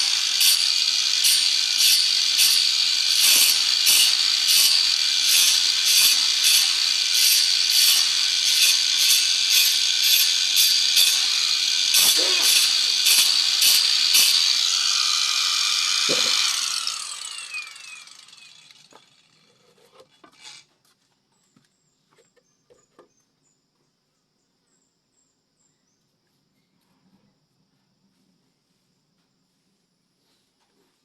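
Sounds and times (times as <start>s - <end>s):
power tool spinning down: 0.0s - 20.7s.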